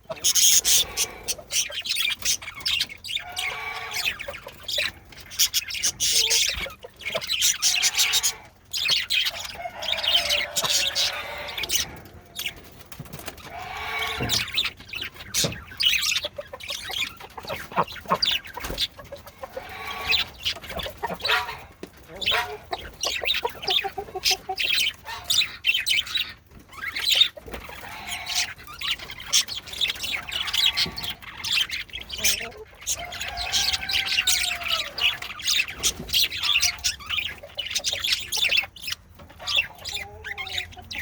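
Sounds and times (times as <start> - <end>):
budgerigars chirping: 0.0 - 41.0.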